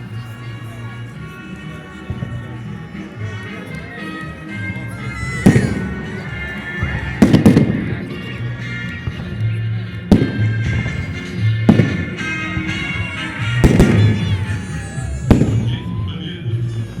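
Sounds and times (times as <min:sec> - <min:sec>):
music: 0:00.0 - 0:17.0
fireworks bangs: 0:05.4 - 0:06.0, 0:06.9 - 0:08.0, 0:10.1 - 0:11.0, 0:11.7 - 0:15.8.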